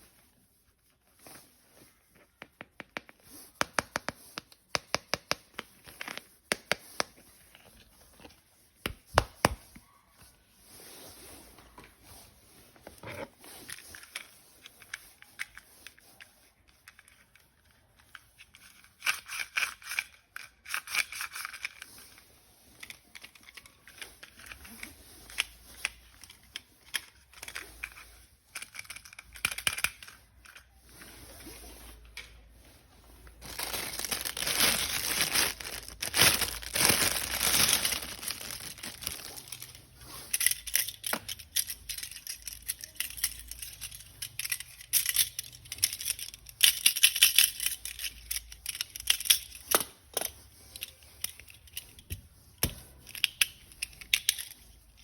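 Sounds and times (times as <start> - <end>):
plastic toy parts clicking: 16.8 - 21.9, 22.8 - 30.6, 40.3 - 55.0
plastic wrap crinkling and tearing: 33.3 - 51.2.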